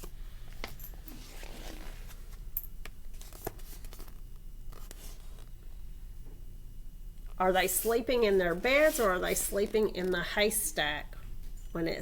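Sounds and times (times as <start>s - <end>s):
faint low hum: 0.0s - 12.0s
paper pages rustling: 0.6s - 2.5s, 3.1s - 5.5s, 7.9s - 10.2s.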